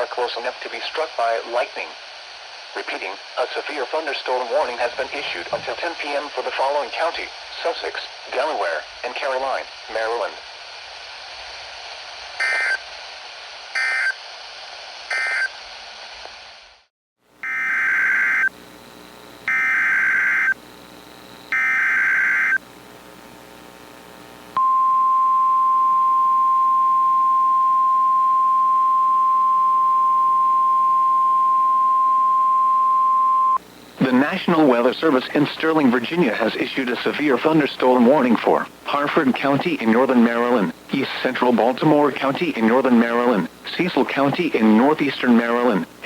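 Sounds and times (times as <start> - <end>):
weather radio alarm tone: 12.4 - 12.8, 13.8 - 14.2, 15.1 - 15.5, 17.4 - 18.5, 19.5 - 20.6, 21.5 - 22.6, 24.6 - 39.6
digital squawks: 15.1 - 15.5.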